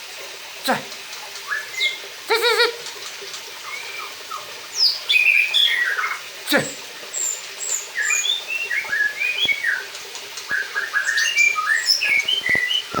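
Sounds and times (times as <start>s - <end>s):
bird singing whistled notes: 1.5s - 2.0s, 3.7s - 6.2s, 7.2s - 9.9s, 10.5s - 13.0s.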